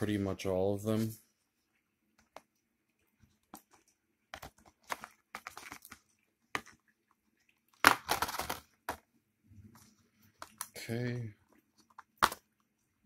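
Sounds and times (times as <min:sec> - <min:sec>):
packaging clicks and crinkles: 0:03.3 - 0:06.9.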